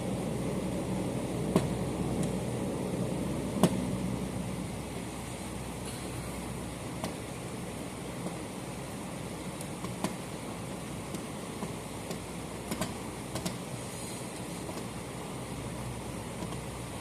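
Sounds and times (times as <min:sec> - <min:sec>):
steady background hum: 0:00.0 - 0:17.0
hardware clicks and taps: 0:11.1 - 0:13.6, 0:14.7 - 0:14.9, 0:16.4 - 0:16.6.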